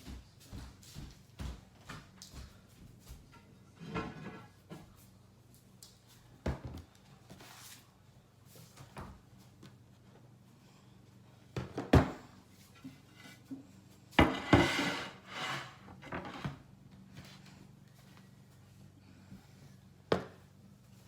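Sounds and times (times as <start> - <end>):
rustling and scraping: 3.0 - 5.2, 7.2 - 9.0, 12.4 - 18.7.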